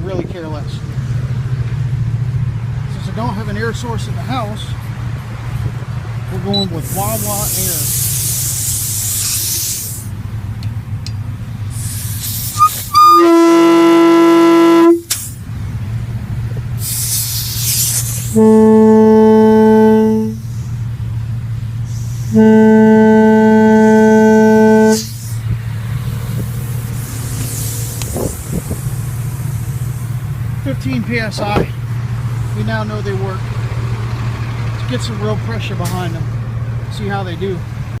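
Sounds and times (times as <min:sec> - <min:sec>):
air hiss from hose: 0:06.8 - 0:10.2, 0:11.7 - 0:13.0, 0:15.0 - 0:15.4, 0:16.8 - 0:18.5, 0:21.8 - 0:22.4, 0:24.8 - 0:25.5, 0:26.3 - 0:30.2
steady low hum: 0:09.9 - 0:32.6
truck air horn blasts: 0:11.7 - 0:15.4, 0:16.8 - 0:20.9, 0:21.8 - 0:25.4.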